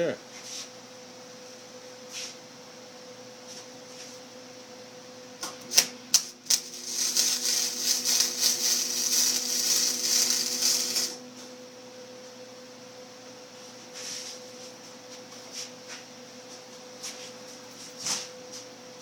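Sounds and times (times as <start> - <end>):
steady low hum: 5.2 - 12.3
welding arc crackling: 5.7 - 11.2.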